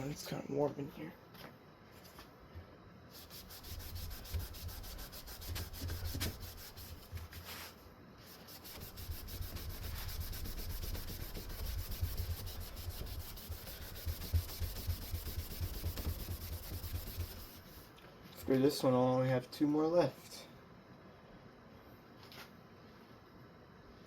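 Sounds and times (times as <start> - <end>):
wipe scrubbing fan blade: 3.1 - 17.8.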